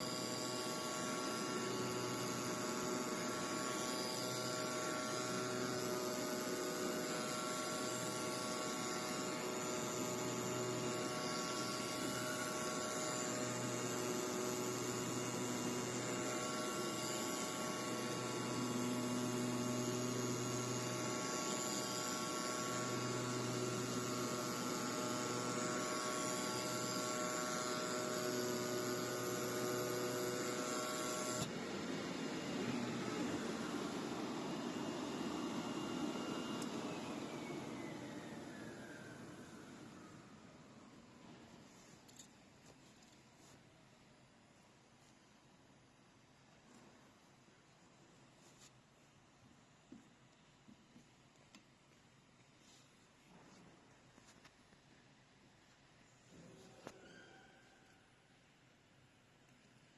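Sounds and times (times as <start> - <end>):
machine hum with whining tones: 0.0 - 43.1, 56.1 - 58.6.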